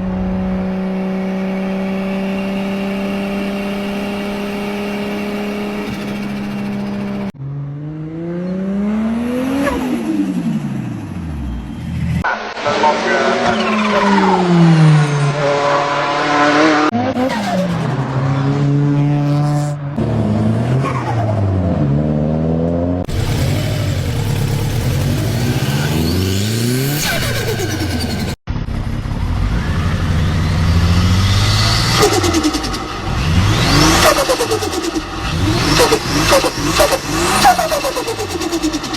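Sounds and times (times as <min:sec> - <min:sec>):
car engines revving: 0:00.0 - 0:38.9
turbo compressor surge flutter: 0:23.1 - 0:38.9.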